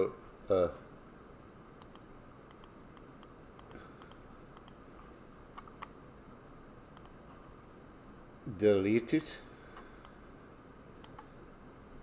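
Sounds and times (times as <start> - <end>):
faint room hiss: 0.0 - 12.0
mouse and keyboard clicks: 1.8 - 4.8, 7.0 - 7.2.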